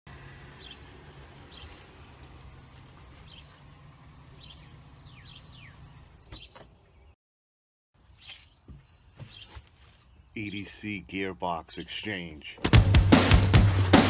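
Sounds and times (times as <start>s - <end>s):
small bird chirping: 0.6s - 2.4s, 3.1s - 7.2s, 8.0s - 10.4s.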